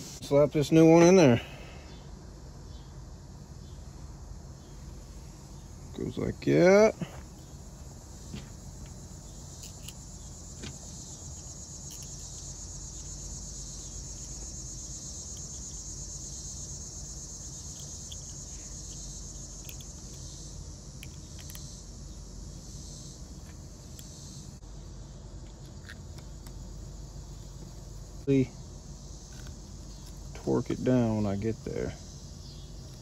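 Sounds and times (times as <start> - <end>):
high-pitched insect chorus: 0.0 - 33.0.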